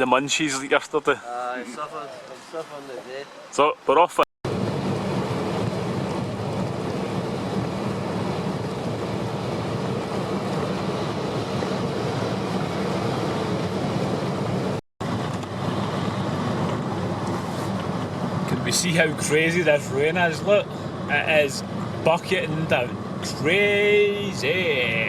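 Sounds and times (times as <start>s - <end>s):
heavy rain: 4.5s - 17.2s
road and engine noise in car: 4.5s - 25.0s.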